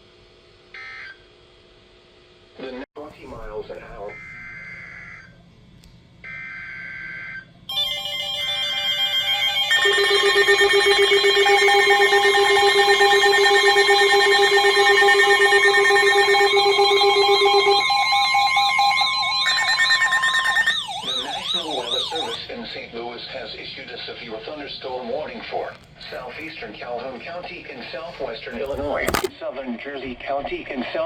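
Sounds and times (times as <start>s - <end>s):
steady alert tones: 7.8s - 22.4s
harsh data bursts: 9.7s - 22.4s
warbling tone: 9.7s - 22.4s.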